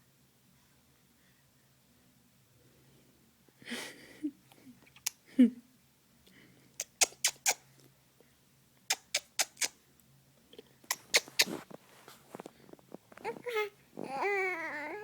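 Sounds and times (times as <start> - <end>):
baby smacking clicks: 10.9 - 11.6
baby squeaking: 10.9 - 11.6.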